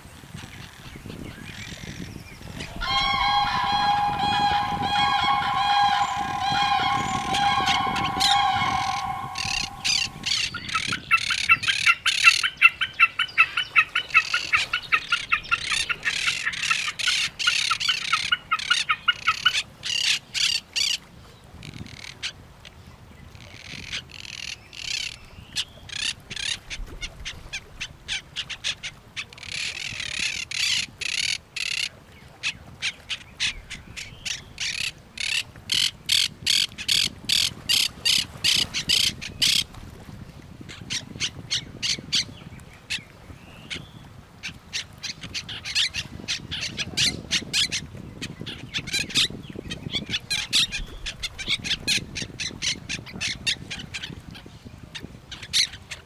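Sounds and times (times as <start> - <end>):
parrots squawking and calling: 2.6 - 10.4.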